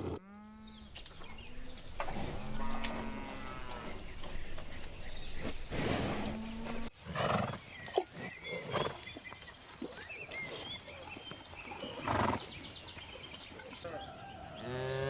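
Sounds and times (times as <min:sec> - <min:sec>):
small birds chirping: 0:00.2 - 0:06.9.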